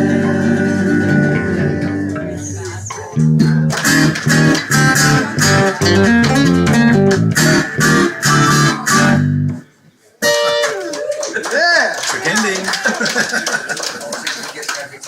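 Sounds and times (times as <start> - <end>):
guitar band playing riff: 0.0 - 11.0.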